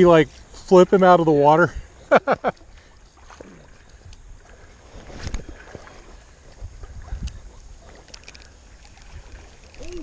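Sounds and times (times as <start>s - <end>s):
water splashing around wading person: 1.9s - 10.0s.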